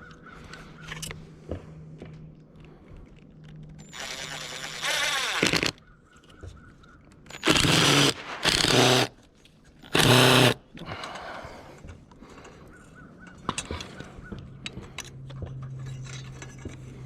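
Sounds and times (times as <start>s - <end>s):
power tool running: 3.9s - 5.8s, 7.3s - 9.1s, 9.9s - 10.6s.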